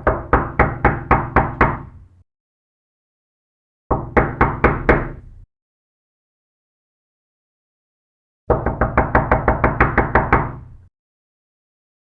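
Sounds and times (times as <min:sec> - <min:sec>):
knocking on a door: 0:00.0 - 0:02.0, 0:03.9 - 0:05.2, 0:08.5 - 0:10.7.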